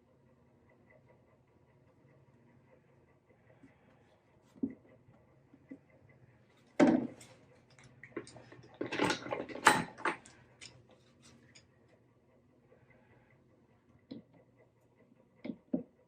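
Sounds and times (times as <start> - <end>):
tools clicking and clattering: 6.8 - 11.7.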